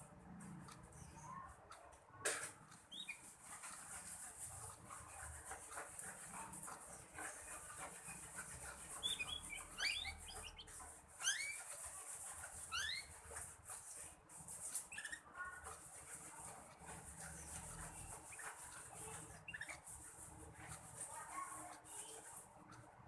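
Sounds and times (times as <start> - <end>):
canary twittering chirps: 2.7 - 21.0.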